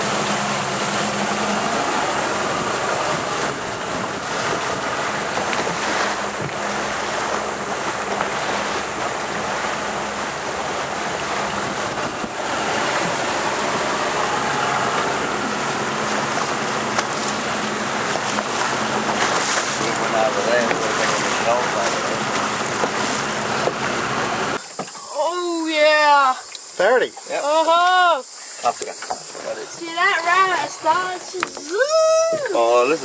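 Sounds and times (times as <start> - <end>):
wind buffeting microphone: 0.0 - 24.6
water sloshing around boat: 0.0 - 33.0.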